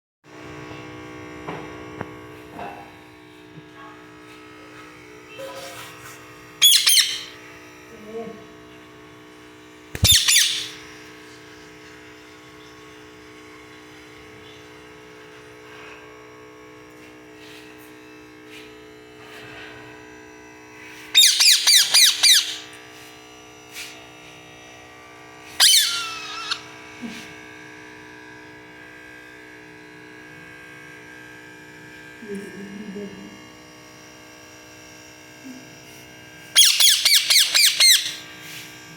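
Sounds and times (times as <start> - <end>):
parrot squawking: 6.6 - 7.4, 10.0 - 10.8, 21.2 - 22.7, 25.6 - 26.6, 36.6 - 38.2.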